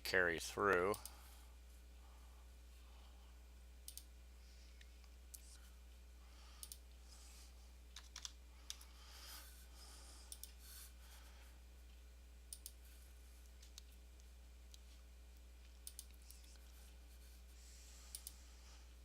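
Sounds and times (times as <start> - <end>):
faint low hum: 0.0 - 19.0
computer mouse clicks: 3.8 - 4.1, 6.6 - 6.8, 7.9 - 8.9, 10.3 - 10.6, 12.5 - 12.8, 15.6 - 16.7, 18.1 - 18.4.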